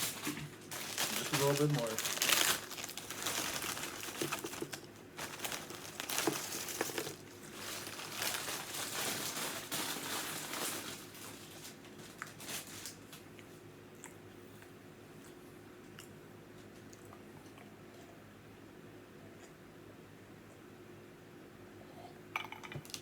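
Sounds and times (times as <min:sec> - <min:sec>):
paper wrapper crinkling: 0:00.0 - 0:13.2.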